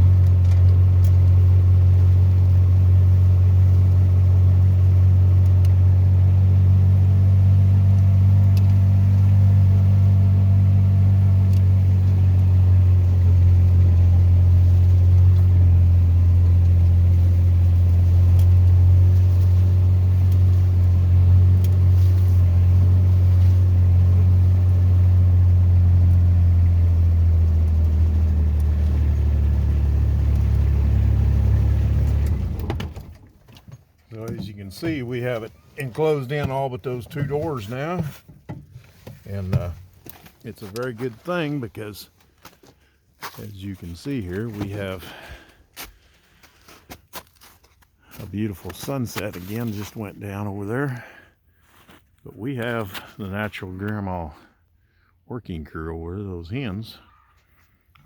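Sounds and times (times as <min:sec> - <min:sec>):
vehicle engine droning: 0:00.0 - 0:45.6.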